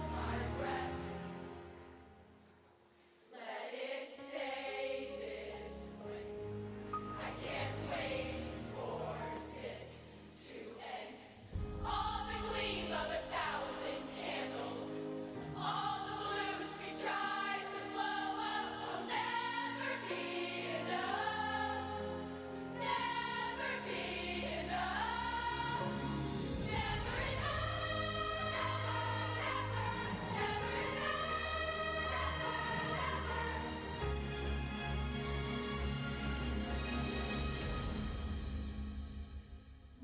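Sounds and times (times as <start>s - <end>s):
group of voices singing: 0.0s - 1.5s, 3.3s - 6.3s, 7.0s - 34.0s
backing music: 0.0s - 2.3s, 5.3s - 40.0s.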